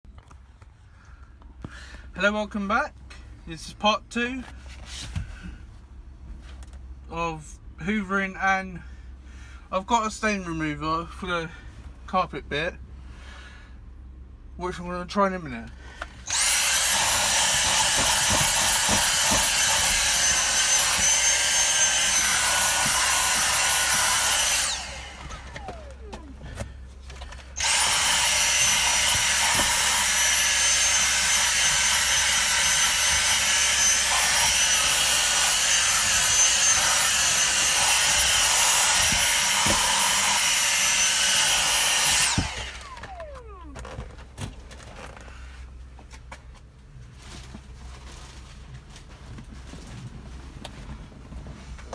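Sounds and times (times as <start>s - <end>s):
vacuum cleaner motor whining: 16.2s - 44.2s.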